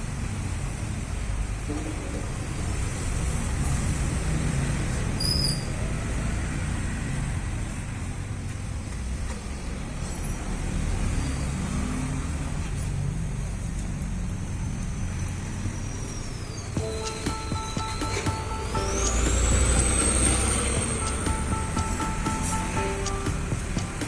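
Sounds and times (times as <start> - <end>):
low rumble of vehicle noise: 0.0 - 16.8
high chirp: 16.7 - 24.0.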